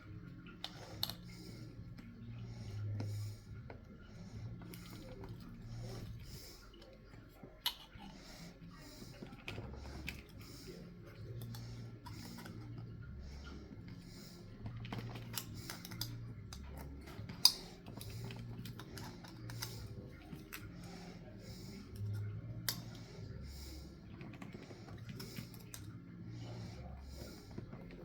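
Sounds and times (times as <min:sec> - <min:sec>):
small parts clicking and tapping: 0:14.7 - 0:20.8.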